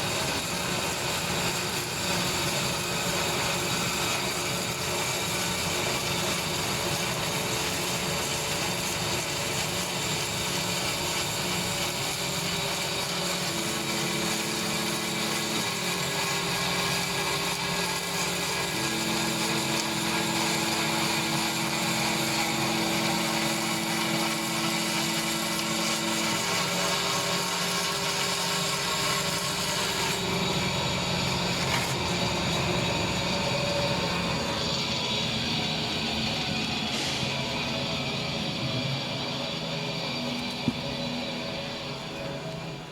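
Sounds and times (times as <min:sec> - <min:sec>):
foam cutting machine running: 0:00.0 - 0:42.9.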